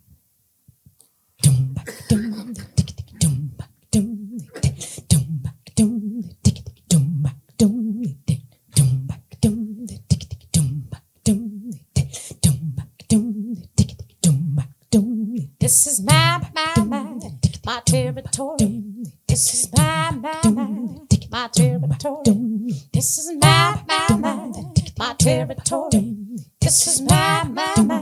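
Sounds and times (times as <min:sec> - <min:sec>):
low vocal bass tone: 0:01.4 - 0:01.9, 0:16.0 - 0:16.9, 0:19.7 - 0:21.0, 0:23.4 - 0:26.1, 0:26.7 - 0:28.0
beatbox drum hits: 0:01.4 - 0:07.8, 0:08.7 - 0:11.4, 0:12.0 - 0:15.1, 0:23.4 - 0:24.2, 0:24.8 - 0:25.4.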